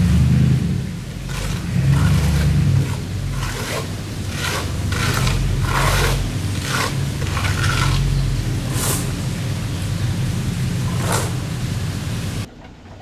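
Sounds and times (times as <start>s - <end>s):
hand tool scraping stucco: 0.0s - 12.0s
low engine hum: 0.0s - 12.9s.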